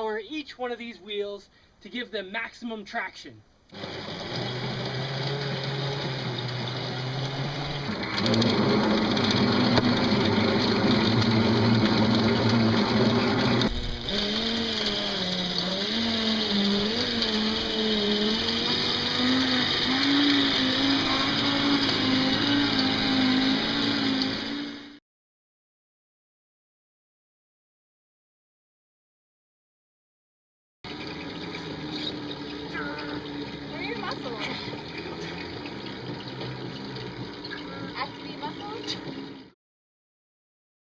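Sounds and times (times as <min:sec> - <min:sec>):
electric motor whine: 0:03.7 - 0:25.0.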